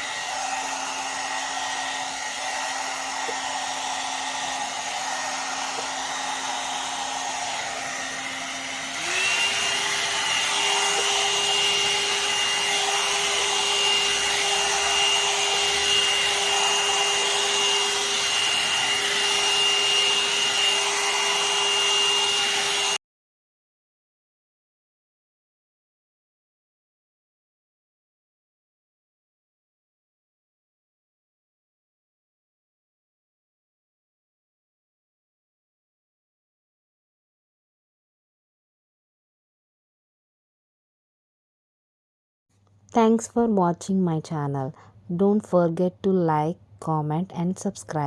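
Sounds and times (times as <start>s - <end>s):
hot air brush motor whine: 0.0s - 23.0s.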